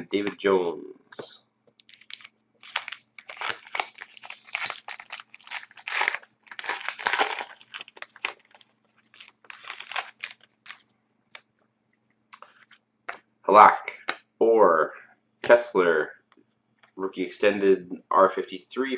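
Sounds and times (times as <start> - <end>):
cards rustling: 1.8 - 10.8
wrapper crinkling: 1.8 - 10.9.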